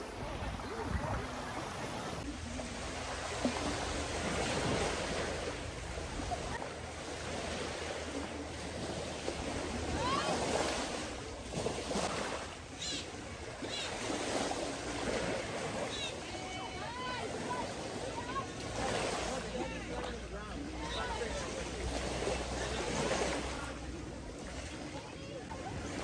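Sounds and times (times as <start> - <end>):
wind on microphone: 0.0 - 6.6
ocean surf on shore: 0.0 - 26.0.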